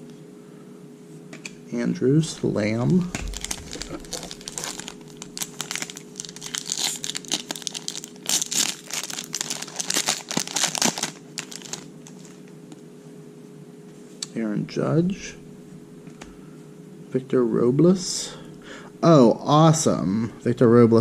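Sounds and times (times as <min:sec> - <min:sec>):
foil wrapper tearing and crinkling: 0:03.2 - 0:12.5.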